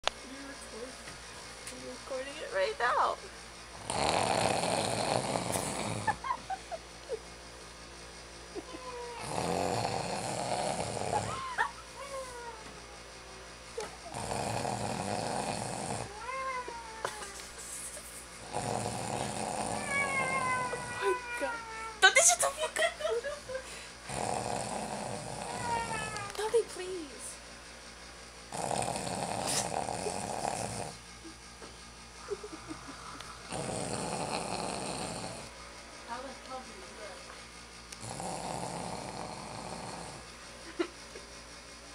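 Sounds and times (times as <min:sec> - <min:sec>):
person fake-snoring: 0:03.8 - 0:06.2, 0:09.1 - 0:11.7, 0:13.8 - 0:16.2, 0:18.4 - 0:21.2, 0:24.1 - 0:26.3, 0:28.5 - 0:31.0, 0:32.3 - 0:35.5, 0:37.9 - 0:40.3.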